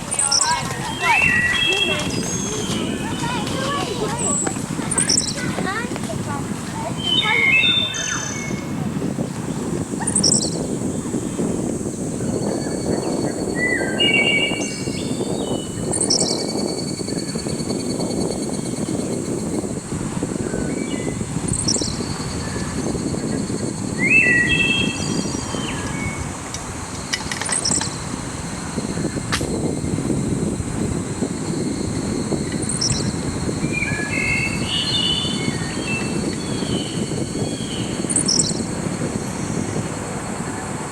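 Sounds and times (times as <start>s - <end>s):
high bird chirps: 0.0s - 11.3s, 12.3s - 19.7s, 20.4s - 26.2s, 31.8s - 39.2s
steady low rumble: 0.0s - 14.0s
birds whistling: 0.0s - 26.3s, 27.0s - 40.7s.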